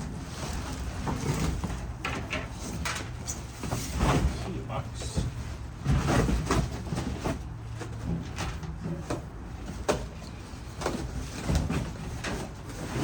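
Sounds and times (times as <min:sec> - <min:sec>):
tool box scraping in cardboard: 0:10.8 - 0:13.0.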